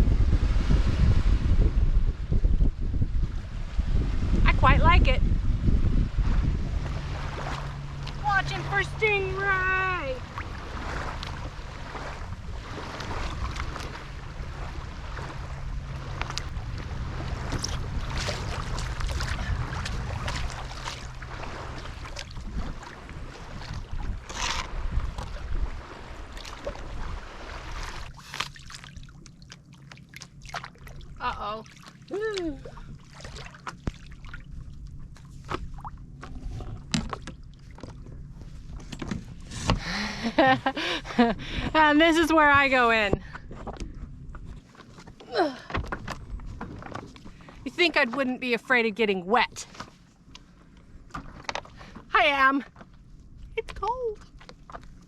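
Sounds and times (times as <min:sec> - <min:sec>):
wind buffeting microphone: 0:00.0 - 0:28.2, 0:30.8 - 0:44.6
shallow seawater lapping: 0:00.0 - 0:55.0
water sloshing and splashing: 0:02.2 - 0:55.0.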